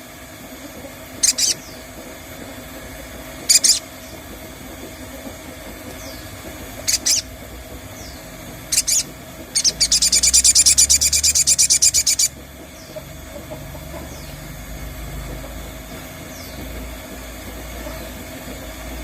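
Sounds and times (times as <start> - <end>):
songbird calls and trill: 1.2 - 2.0, 3.4 - 4.2, 5.9 - 15.5, 16.2 - 16.8.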